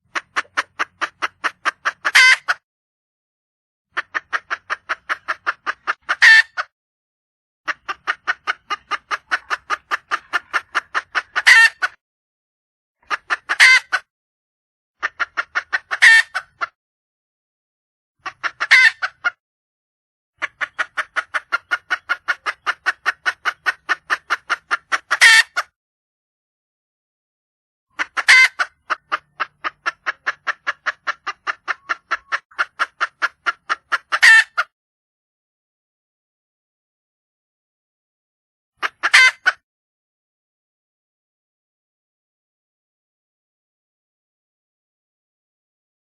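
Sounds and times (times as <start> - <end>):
hen clucking and squawking: 0.0 - 2.6, 3.9 - 6.7, 7.7 - 12.0, 13.0 - 14.1, 15.0 - 16.8, 18.2 - 19.4, 20.4 - 25.8, 27.9 - 34.7, 38.8 - 39.6.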